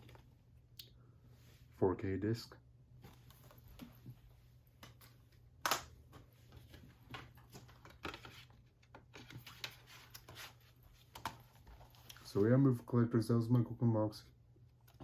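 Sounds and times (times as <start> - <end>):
plastic disc case clicks and rustles: 6.6 - 10.4.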